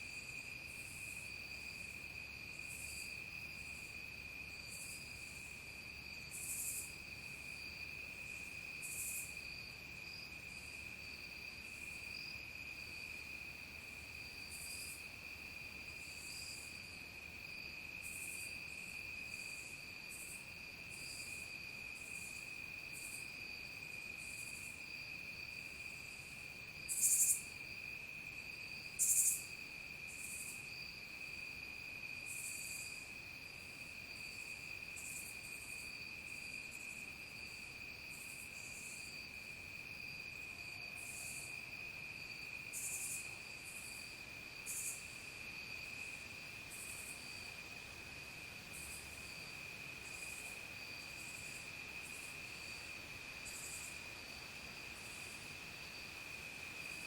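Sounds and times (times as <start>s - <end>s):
buzzy insect calls: 0.0s - 9.5s, 24.2s - 27.6s, 28.8s - 31.0s, 32.2s - 39.4s, 42.3s - 47.5s, 48.7s - 56.2s
insects trilling: 0.0s - 57.0s.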